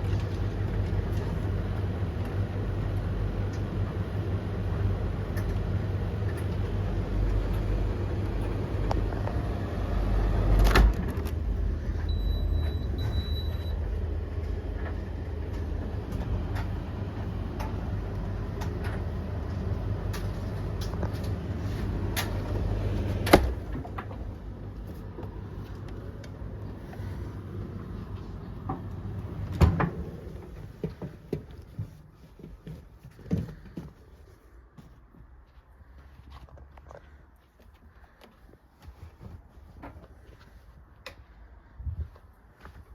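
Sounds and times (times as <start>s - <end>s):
tumble dryer drums rumbling: 0.0s - 34.2s.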